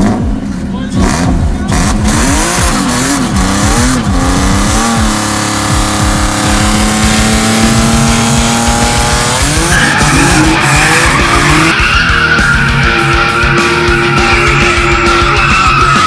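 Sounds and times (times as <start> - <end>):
loud music with fast beat: 0.0 - 16.0.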